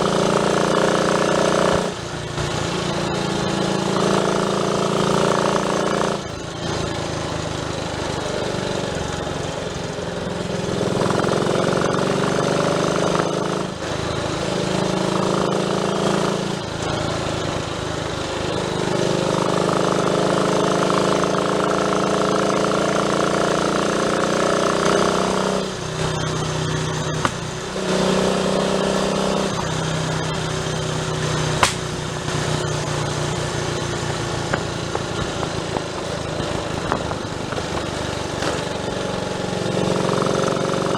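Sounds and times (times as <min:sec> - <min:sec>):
motorcycle engine running: 0:00.0 - 0:40.9
sharp clicks: 0:31.6 - 0:31.9.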